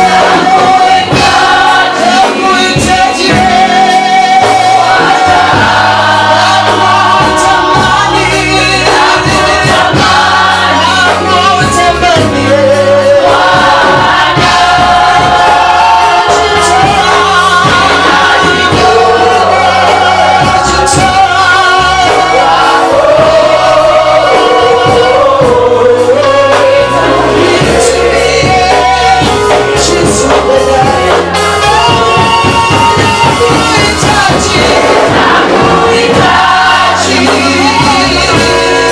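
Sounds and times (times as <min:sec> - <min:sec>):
band playing: 0:00.0 - 0:38.9
bass line: 0:00.0 - 0:38.9
choir singing: 0:00.0 - 0:38.9
drums: 0:00.0 - 0:38.9.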